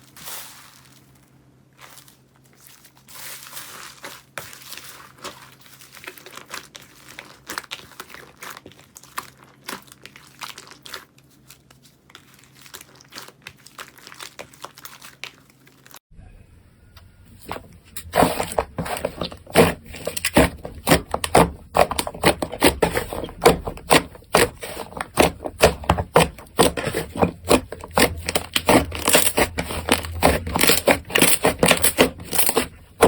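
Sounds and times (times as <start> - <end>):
slime crackling by hand: 17.4 - 33.0.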